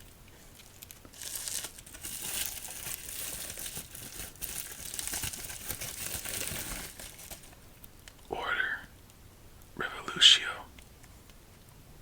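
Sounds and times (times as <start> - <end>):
plastic packaging crinkling: 0.0 - 8.2.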